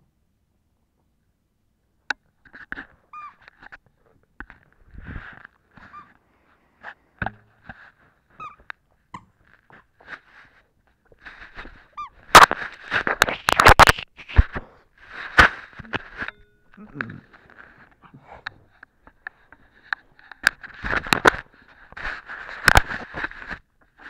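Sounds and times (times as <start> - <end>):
squeaky dog toy squeaking: 3.1 - 3.4, 5.8 - 6.2, 8.3 - 9.3, 11.9 - 12.4.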